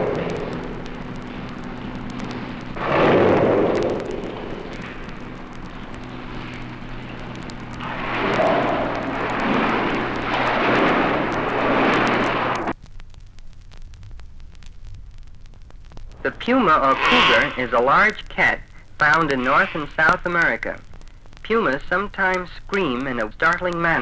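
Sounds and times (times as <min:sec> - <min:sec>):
hippopotamus snorting: 0:07.8 - 0:12.7.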